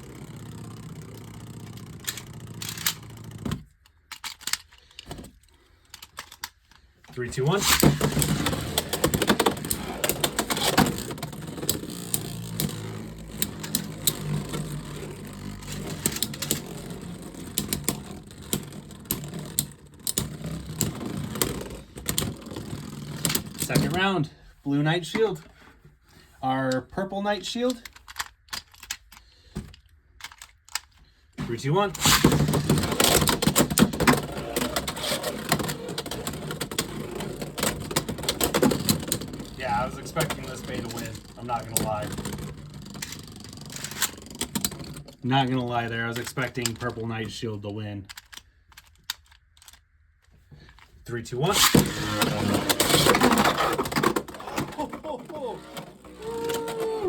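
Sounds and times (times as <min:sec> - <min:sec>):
spinning tops whirring: 0:07.5 - 0:23.9, 0:32.0 - 0:45.1, 0:51.4 - 0:57.0
spinning tops clicking and knocking: 0:07.6 - 0:23.9.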